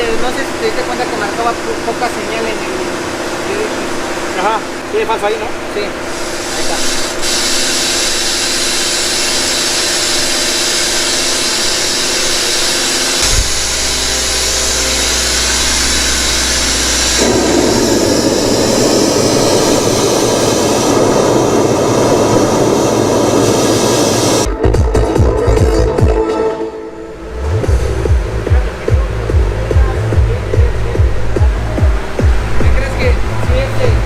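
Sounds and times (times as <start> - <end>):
loud hissy sound system music: 0.0 - 34.0
loud middle rumble: 11.2 - 34.0
deep bass: 13.1 - 26.5, 27.1 - 34.0.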